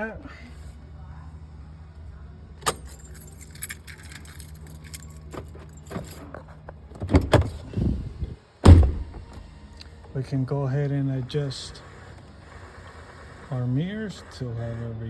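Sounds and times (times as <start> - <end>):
keys jangling: 2.6 - 7.6
heavy thumps: 8.6 - 9.4.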